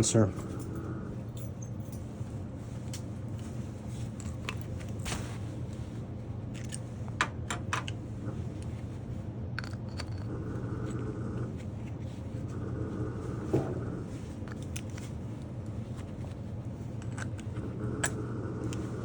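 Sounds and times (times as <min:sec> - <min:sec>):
steady low hum: 0:00.0 - 0:19.0
small parts clicking and tapping: 0:09.6 - 0:10.3.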